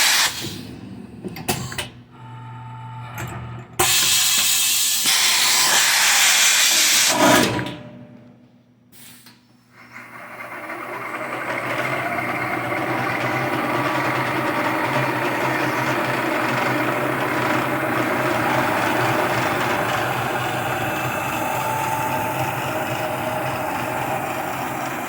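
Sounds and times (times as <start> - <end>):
milling machine humming: 10.0 - 25.0.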